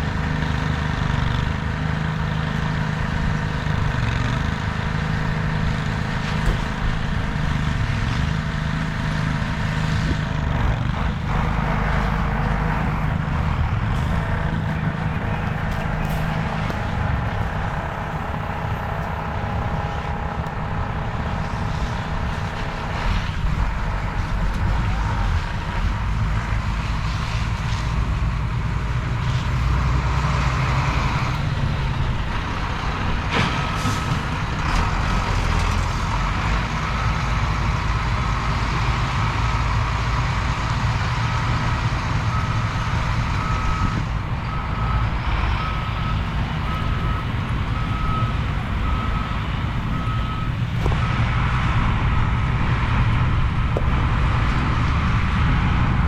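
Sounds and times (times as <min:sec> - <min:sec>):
low engine rumble: 0:00.0 - 0:56.0
truck backup alarm beeping: 0:14.1 - 0:26.5, 0:29.6 - 0:51.4.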